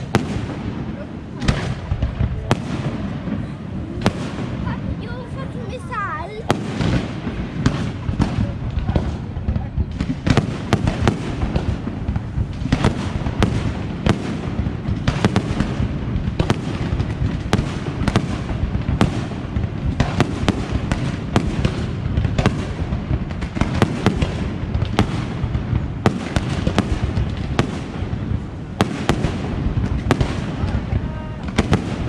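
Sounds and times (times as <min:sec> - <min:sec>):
low rumble and crackle: 0:06.8 - 0:32.0.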